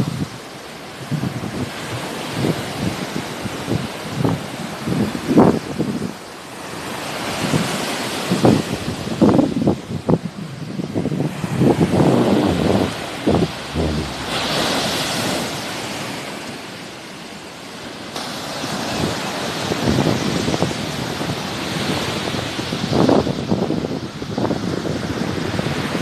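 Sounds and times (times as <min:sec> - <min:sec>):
sea waves washing ashore: 0:00.0 - 0:26.0
wind buffeting microphone: 0:08.3 - 0:15.8.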